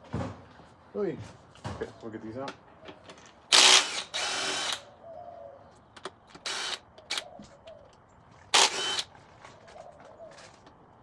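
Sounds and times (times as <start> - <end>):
harsh power tool bursts: 3.5 - 4.8, 6.5 - 6.8, 8.6 - 9.1
pigeons cooing: 4.8 - 5.8.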